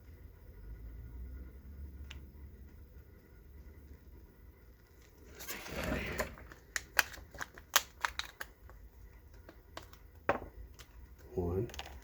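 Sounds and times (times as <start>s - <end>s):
small hard items clicking: 6.4s - 12.0s.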